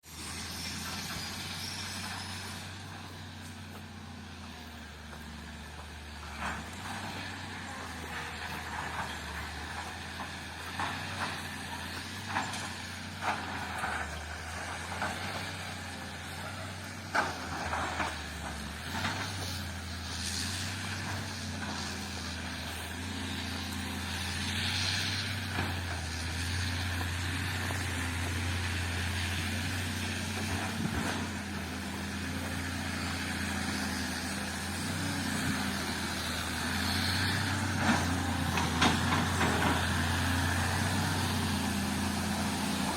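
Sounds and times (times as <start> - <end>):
heavy diesel machine running: 0.0 - 42.9.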